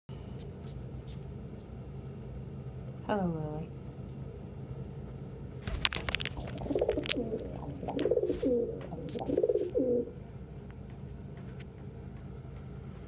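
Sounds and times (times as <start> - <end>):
rustling: 5.6 - 9.8
pigeon cooing: 5.7 - 10.3.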